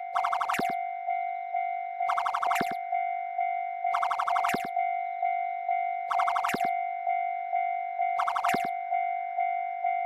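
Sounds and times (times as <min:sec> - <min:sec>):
railroad crossing warning bell: 0:00.0 - 0:10.0
cartoon pips with falling swoop: 0:00.2 - 0:00.8, 0:02.1 - 0:02.8, 0:04.0 - 0:04.7, 0:06.1 - 0:06.7, 0:08.2 - 0:08.7.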